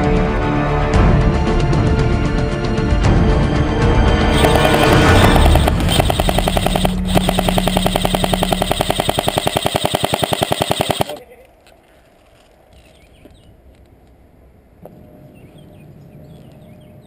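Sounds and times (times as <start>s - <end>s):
airsoft rifle full-auto burst: 4.4s - 11.2s.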